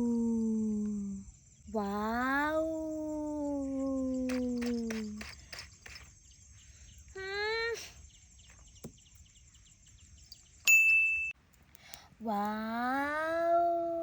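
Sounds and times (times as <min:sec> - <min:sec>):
light clicks and ticks: 0:11.5 - 0:12.6.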